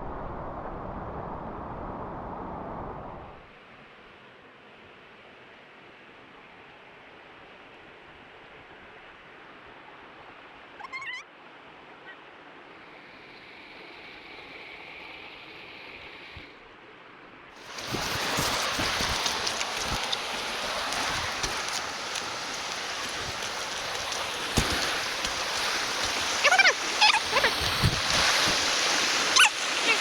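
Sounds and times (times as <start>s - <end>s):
river water rushing: 17.6s - 30.0s.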